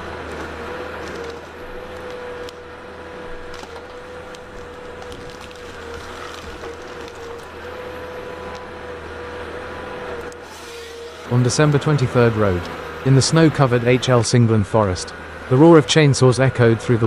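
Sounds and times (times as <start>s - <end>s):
wood cracking: 0.0s - 8.7s
engine-driven machine humming: 0.0s - 17.0s.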